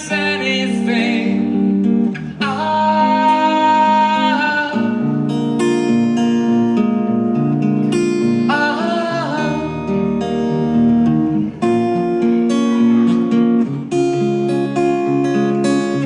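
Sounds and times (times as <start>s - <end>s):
wavering vocal note: 0.0s - 5.4s, 8.5s - 10.4s
acoustic guitar strumming chords: 0.0s - 16.0s.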